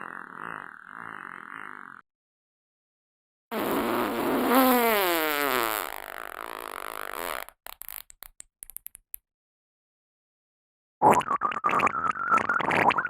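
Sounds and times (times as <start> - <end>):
fart sound effect: 3.5 - 8.1.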